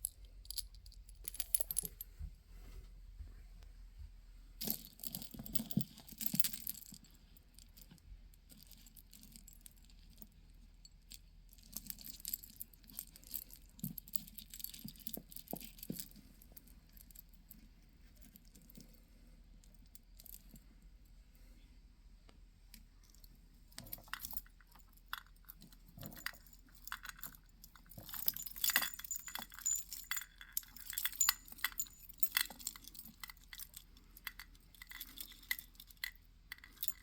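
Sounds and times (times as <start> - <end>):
beads clicking and rattling: 23.8 - 37.0.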